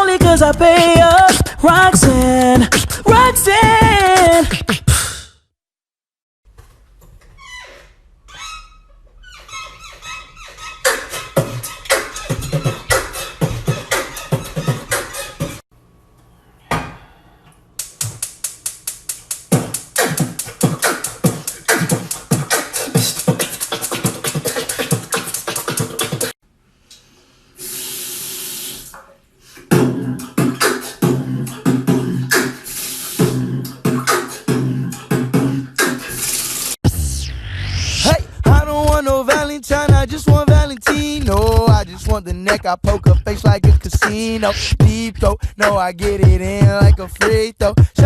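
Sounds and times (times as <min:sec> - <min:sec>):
beatboxing mouth percussion: 0:00.0 - 0:05.4, 0:10.9 - 0:15.6, 0:17.8 - 0:26.4, 0:29.6 - 0:36.8, 0:38.0 - 0:48.0.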